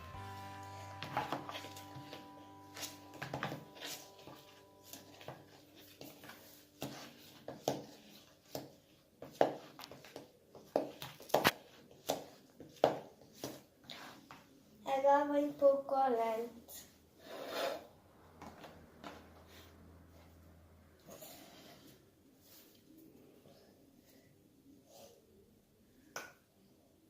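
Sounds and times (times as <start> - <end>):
utensil scraping a container: 17.2 - 17.9.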